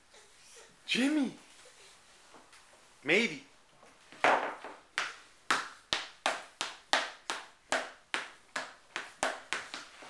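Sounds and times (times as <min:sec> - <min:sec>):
hands clapping in rhythm: 0:04.9 - 0:09.9.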